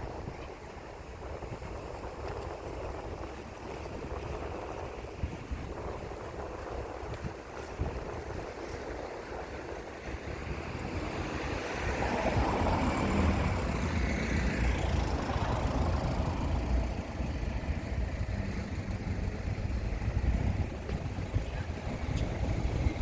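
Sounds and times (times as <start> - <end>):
steady low traffic rumble: 0.0 - 23.0
vehicle passing: 10.3 - 23.0.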